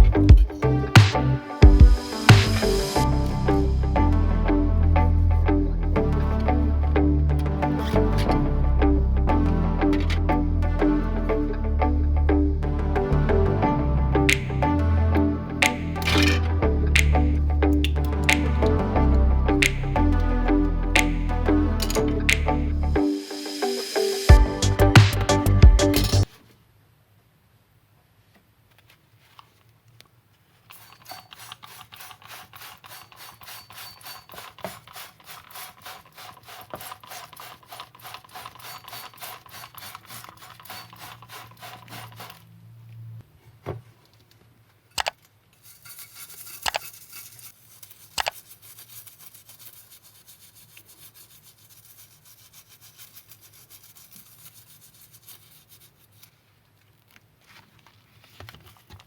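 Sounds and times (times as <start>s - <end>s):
sharp clicks: 14.3s - 14.6s, 17.0s - 18.6s, 21.0s - 22.7s
rubbing strokes on hard surface: 30.7s - 42.4s, 45.6s - 56.5s.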